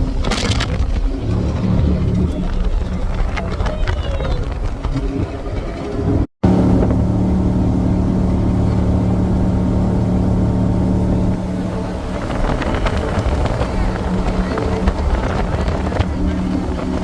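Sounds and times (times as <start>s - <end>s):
jet boat engine running: 0.0s - 3.6s, 4.4s - 17.0s.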